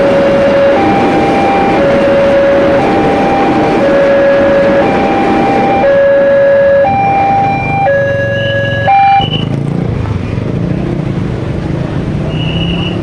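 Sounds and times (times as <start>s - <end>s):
brief loud tone: 0.0s - 9.5s
level crossing two-tone siren: 0.0s - 9.5s
steady rushing noise: 0.0s - 12.3s.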